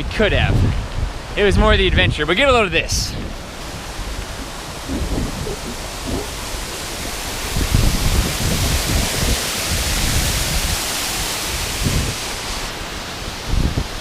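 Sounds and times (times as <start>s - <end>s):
wind buffeting microphone: 0.0s - 10.9s, 13.4s - 14.0s
bike tyres rumbling on trail: 3.2s - 10.7s.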